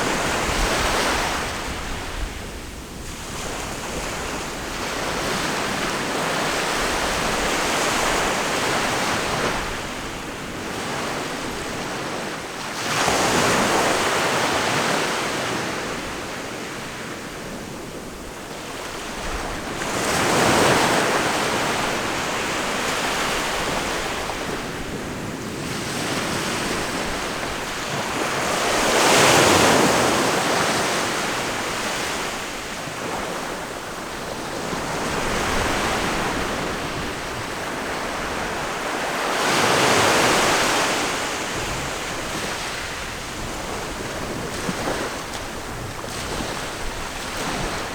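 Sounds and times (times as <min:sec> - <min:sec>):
ocean waves breaking: 0:18.9 - 0:47.9.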